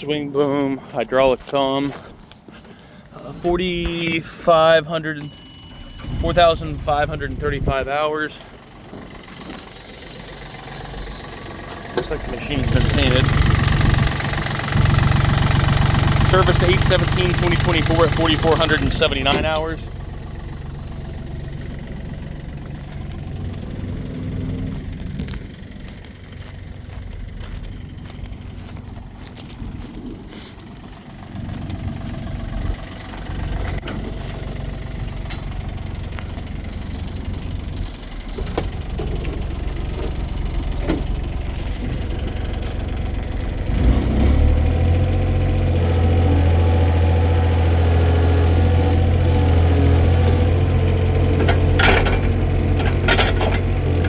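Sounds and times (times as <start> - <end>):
diesel engine idling: 2.6 - 54.0.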